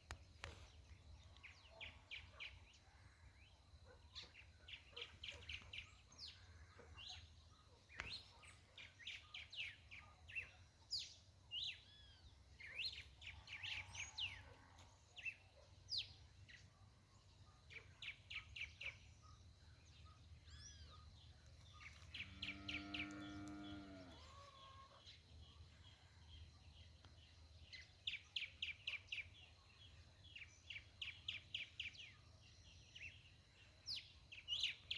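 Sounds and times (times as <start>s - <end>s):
birds chirping and trilling: 0.1s - 34.9s.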